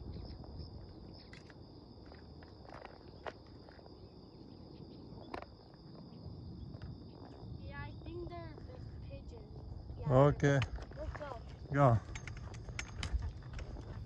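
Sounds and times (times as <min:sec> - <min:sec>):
insects calling high-pitched: 0:00.0 - 0:14.0
footsteps on trail: 0:10.4 - 0:14.0
sharp clicks: 0:12.0 - 0:13.9.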